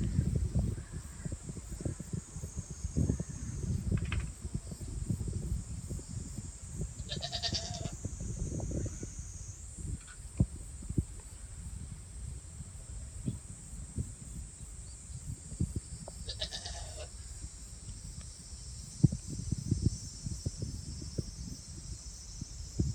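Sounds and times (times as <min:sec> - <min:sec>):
goat bleating: 0:07.1 - 0:07.9, 0:16.3 - 0:17.1.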